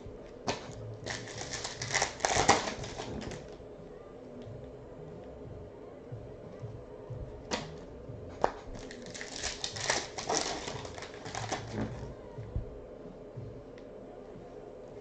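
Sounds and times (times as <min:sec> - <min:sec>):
packaging crinkling and rustling: 0:00.5 - 0:03.6, 0:08.5 - 0:12.0.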